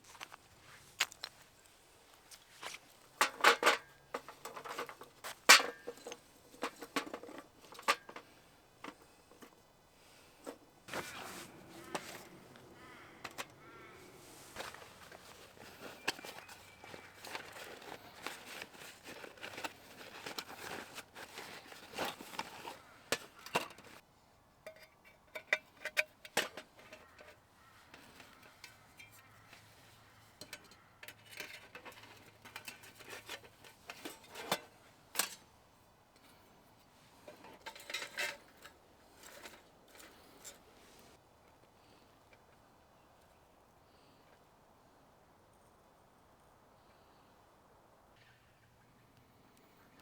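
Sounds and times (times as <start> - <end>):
objects clicking and clinking: 10.5 - 24.0.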